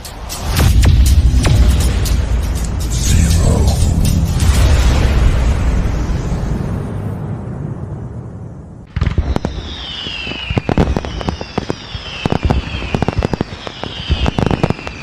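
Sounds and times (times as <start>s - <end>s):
low rumble: 0.6s - 9.0s
fireworks crackling pops: 8.9s - 15.0s
fireworks whistles falling in pitch: 9.0s - 15.0s.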